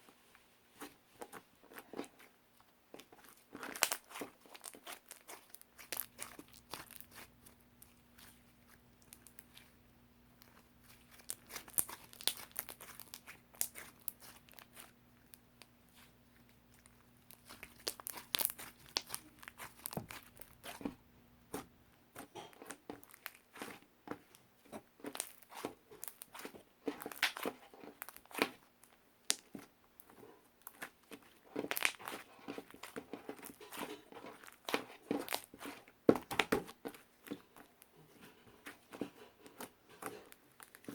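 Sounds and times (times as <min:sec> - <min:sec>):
faint low hum: 0:05.4 - 0:25.0
crinkling material handled: 0:10.4 - 0:40.9.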